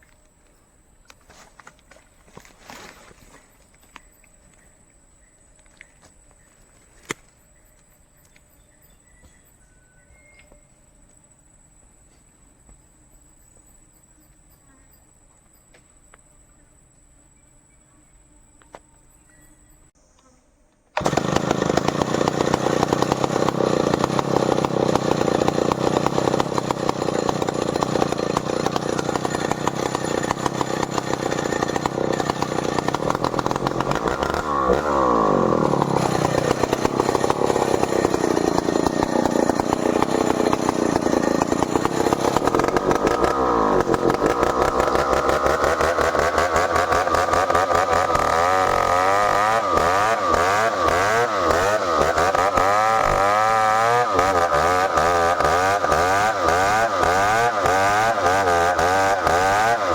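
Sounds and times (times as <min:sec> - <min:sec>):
chainsaw cutting wood: 0:21.0 - 0:59.9.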